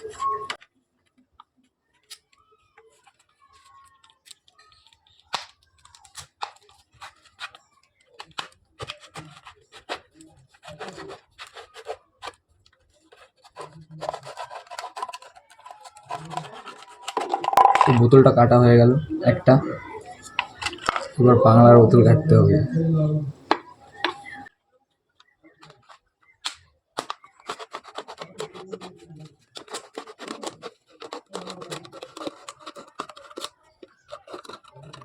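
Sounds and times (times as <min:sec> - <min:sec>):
plastic bottle being cut: 0:08.2 - 0:12.4, 0:13.1 - 0:24.4, 0:26.4 - 0:35.0.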